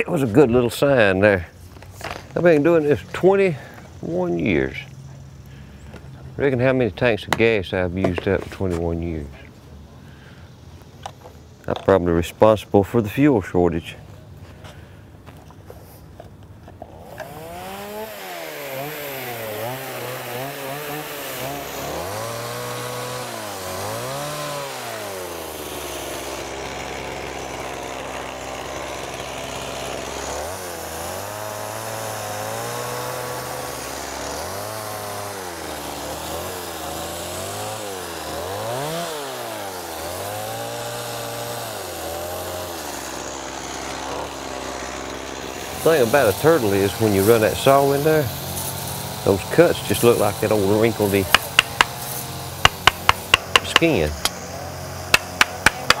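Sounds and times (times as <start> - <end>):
chainsaw cutting wood: 16.6 - 56.0.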